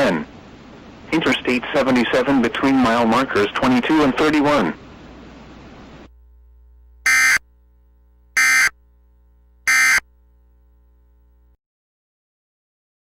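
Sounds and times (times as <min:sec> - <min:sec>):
faint steady hum: 0:00.0 - 0:11.6
buzzing digital data bursts: 0:07.0 - 0:07.4, 0:08.4 - 0:08.8, 0:09.7 - 0:10.0.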